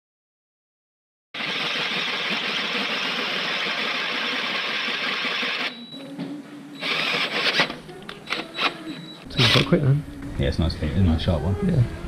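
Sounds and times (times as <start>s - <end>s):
power drill cutting into metal: 1.4s - 5.8s, 6.8s - 8.8s, 9.4s - 9.7s.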